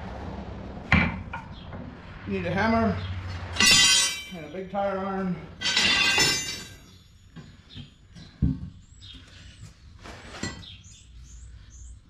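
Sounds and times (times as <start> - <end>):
steel tools knocking: 3.6 - 4.4, 5.6 - 6.8
small birds chirping: 6.8 - 12.0.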